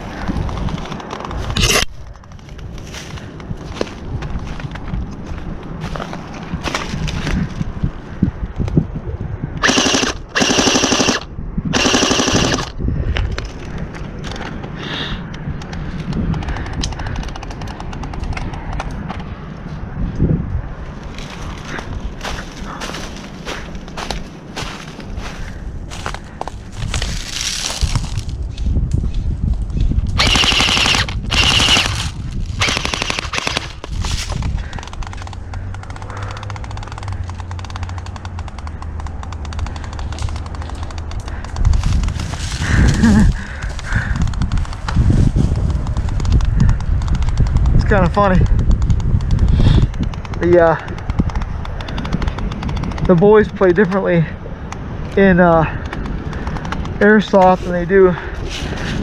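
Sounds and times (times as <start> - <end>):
wind rumbling on microphone: 0.0 - 59.0
airsoft gun full-auto bursts: 9.6 - 11.2, 11.8 - 12.7, 30.2 - 33.8
faint rapid clicking: 32.6 - 42.2.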